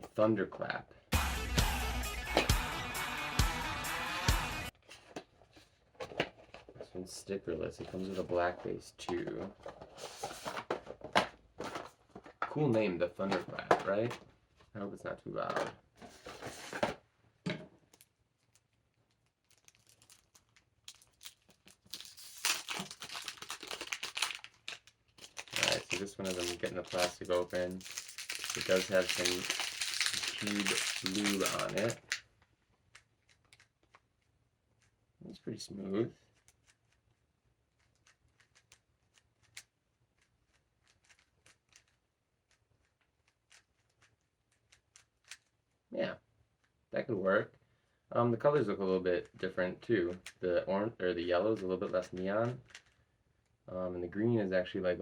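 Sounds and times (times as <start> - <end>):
plastic wrapping crinkling and tearing: 17.9 - 32.2
puzzle cube clicking: 37.7 - 45.5.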